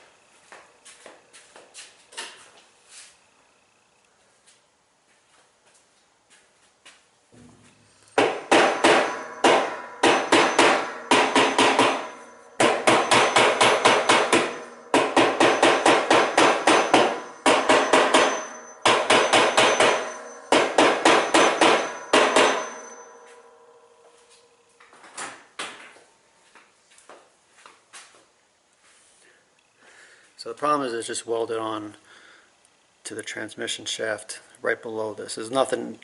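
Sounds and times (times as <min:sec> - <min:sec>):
hammer striking metal: 0:07.4 - 0:24.1.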